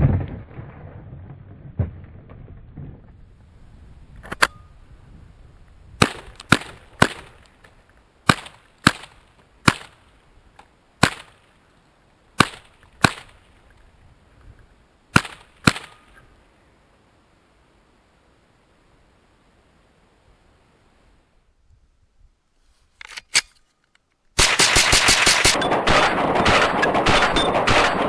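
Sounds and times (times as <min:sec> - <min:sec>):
rifle shots: 0:06.0 - 0:07.4, 0:11.0 - 0:11.4, 0:15.2 - 0:16.0, 0:24.4 - 0:28.0.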